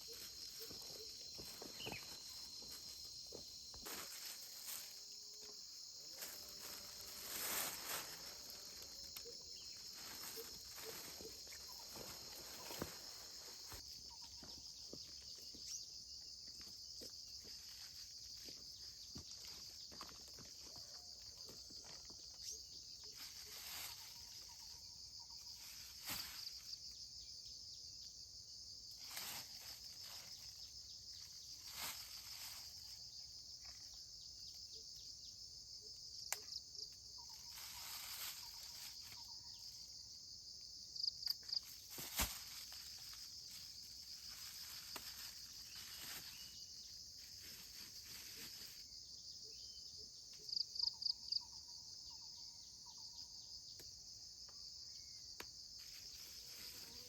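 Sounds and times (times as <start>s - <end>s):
insect chorus: 0.0s - 57.0s
short rustling: 6.2s - 13.8s, 41.6s - 46.6s.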